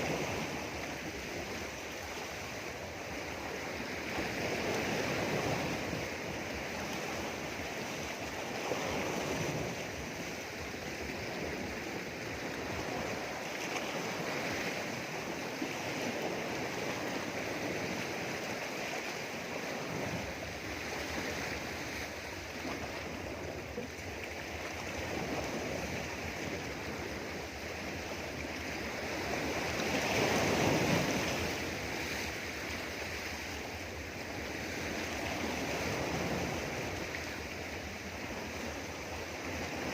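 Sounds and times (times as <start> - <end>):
sea waves washing around rocks: 0.0 - 39.9.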